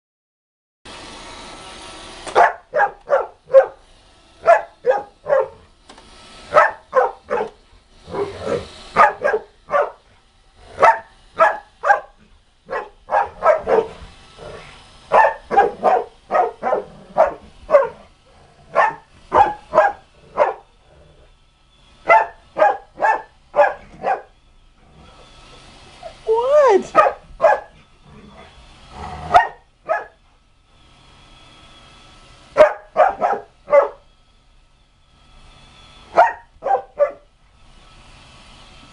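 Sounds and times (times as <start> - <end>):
dog barking deeply: 2.4 - 3.8, 4.4 - 5.6, 6.5 - 10.0, 10.8 - 14.0, 15.1 - 18.0, 18.7 - 20.6, 22.1 - 24.3, 26.8 - 27.7, 29.2 - 30.2, 32.6 - 34.0, 36.2 - 37.3.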